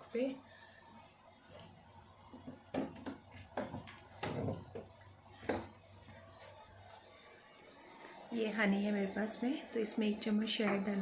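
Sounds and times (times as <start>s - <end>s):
kitchen items knocking and clattering: 2.3s - 5.8s.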